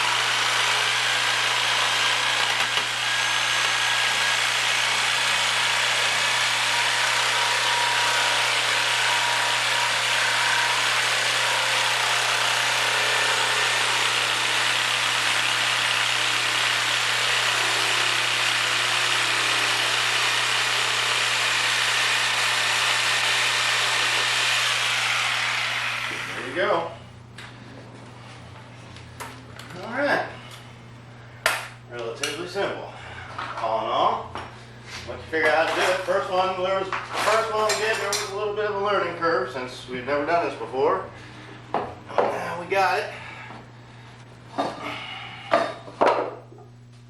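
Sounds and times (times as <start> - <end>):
power tool cutting plastic: 0.0 - 26.7.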